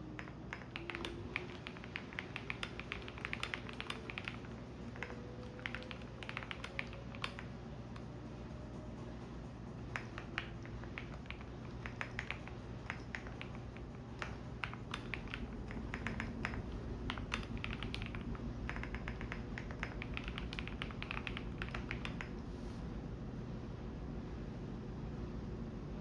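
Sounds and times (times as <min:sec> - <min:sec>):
washing machine hum: 0:00.0 - 0:26.0
keyboard key clicks: 0:10.0 - 0:22.4.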